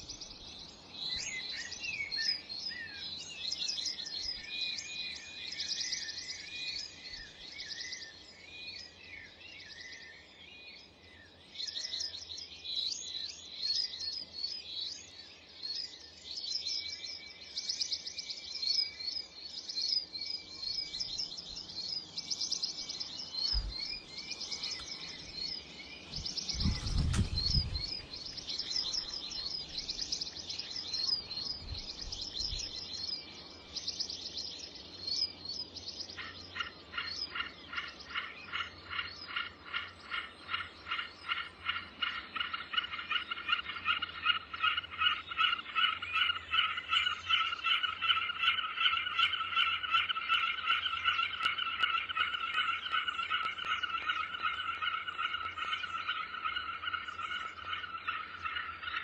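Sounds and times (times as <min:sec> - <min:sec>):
songbirds chirping: 0:00.0 - 0:59.0
low thud: 0:26.1 - 0:28.2
low rumble with knock: 0:26.2 - 0:28.0.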